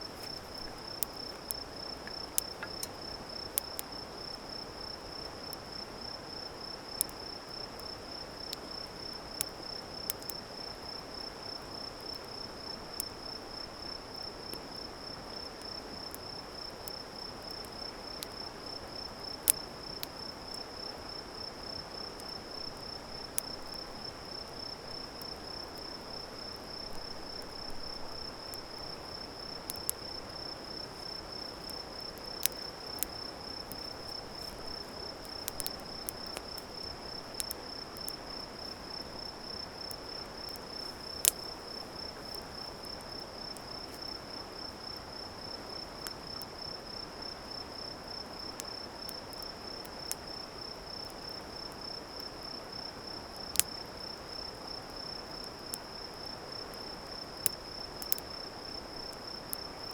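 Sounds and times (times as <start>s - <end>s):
campfire popping and crackling: 0.0s - 5.7s, 21.5s - 45.0s
crickets trilling: 0.0s - 59.9s.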